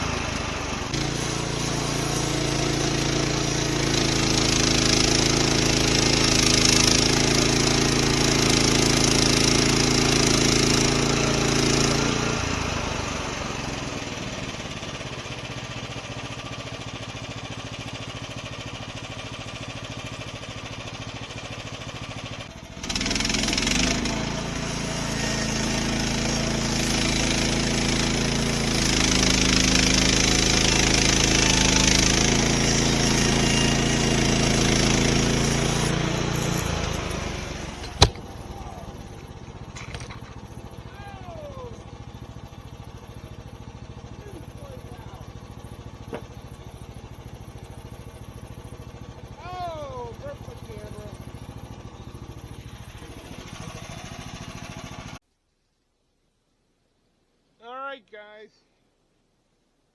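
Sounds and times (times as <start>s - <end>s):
hissing saw cutting: 0.0s - 15.0s, 22.5s - 49.4s
sawmill engine running: 0.0s - 55.2s.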